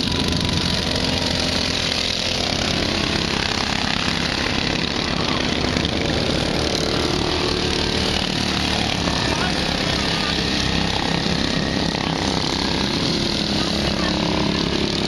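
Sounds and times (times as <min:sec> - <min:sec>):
lawn mower engine drone: 0:00.0 - 0:15.0.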